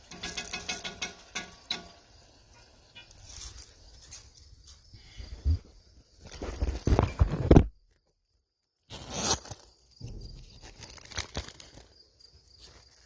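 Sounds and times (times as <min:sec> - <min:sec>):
food packaging rustling: 0:10.3 - 0:13.0.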